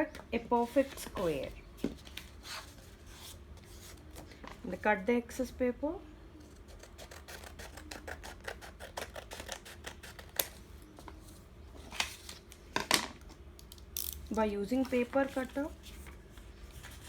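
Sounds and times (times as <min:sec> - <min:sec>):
paper knife cutting paper: 0:06.5 - 0:10.5.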